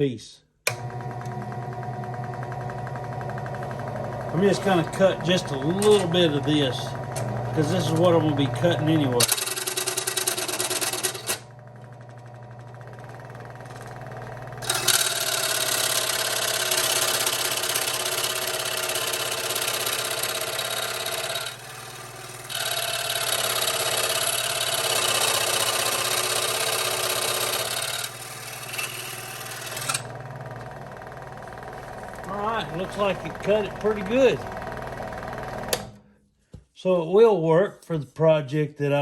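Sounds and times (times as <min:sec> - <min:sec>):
scroll saw motor humming: 0:00.7 - 0:36.0
saw blade cutting metal: 0:14.6 - 0:30.1.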